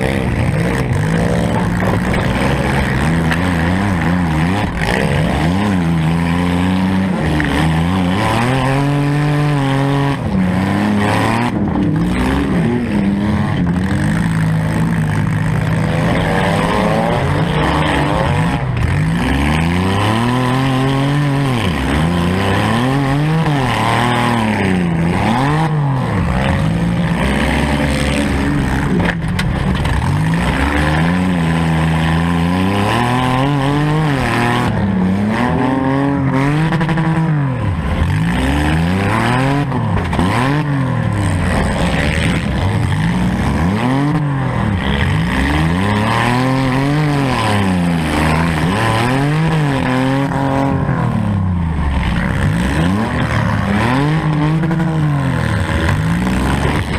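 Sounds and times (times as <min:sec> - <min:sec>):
car engine revving: 0:00.0 - 0:56.9.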